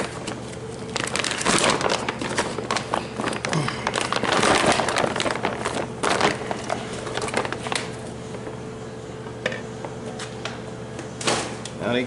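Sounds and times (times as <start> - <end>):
crinkling and light clicks: 1.0 - 8.5.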